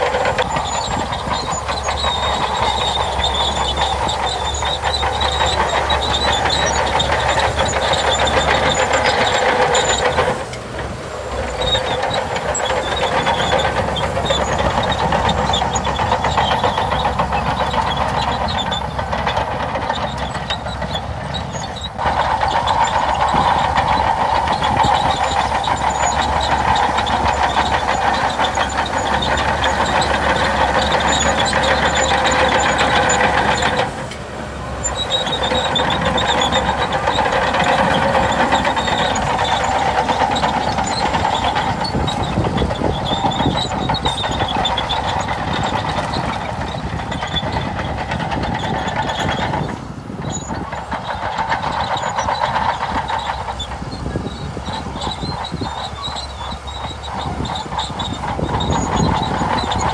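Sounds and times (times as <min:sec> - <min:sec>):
bulldozer engine under load: 0:00.0 - 0:59.9
metallic track rattle: 0:00.0 - 0:59.9.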